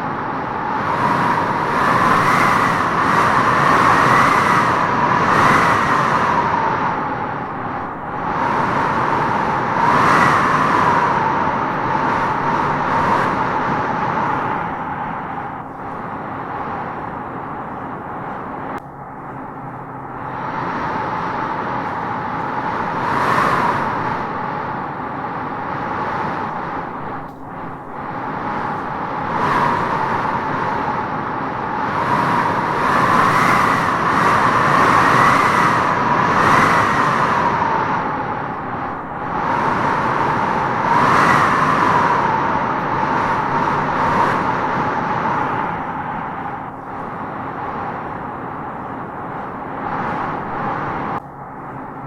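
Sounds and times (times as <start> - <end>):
wind howling through trees: 0.0 - 52.0.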